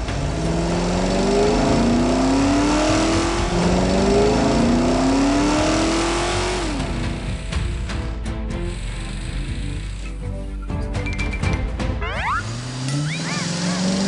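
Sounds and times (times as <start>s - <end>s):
cartoon car engine revving: 0.0s - 7.4s, 12.0s - 14.0s.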